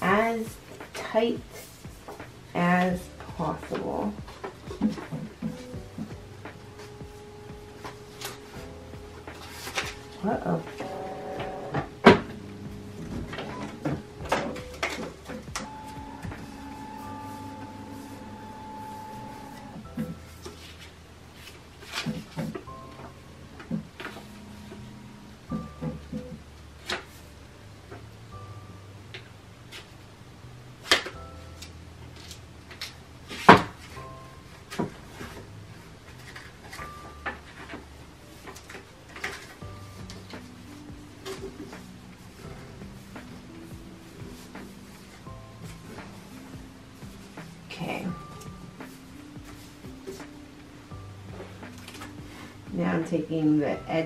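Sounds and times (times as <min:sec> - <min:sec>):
soft background music: 0:00.0 - 0:54.0
paper and tape rustling: 0:09.2 - 0:11.0, 0:20.0 - 0:22.7, 0:30.8 - 0:50.4, 0:51.5 - 0:52.6.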